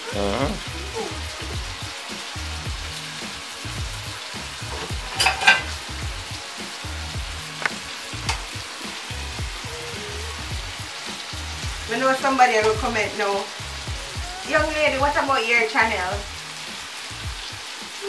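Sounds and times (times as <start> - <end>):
food sizzling in a pan: 0.0 - 18.0
utensil clattering against pan: 4.7 - 5.8.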